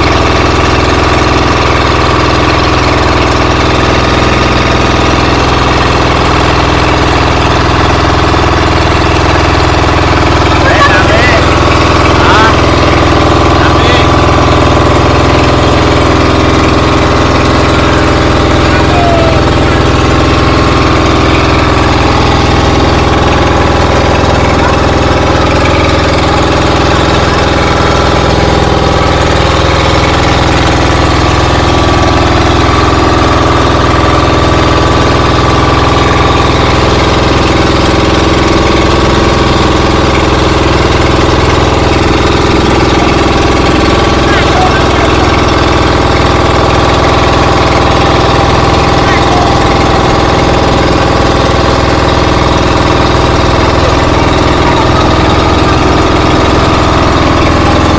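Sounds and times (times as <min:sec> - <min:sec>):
engine droning loudly: 0:00.0 - 0:57.9.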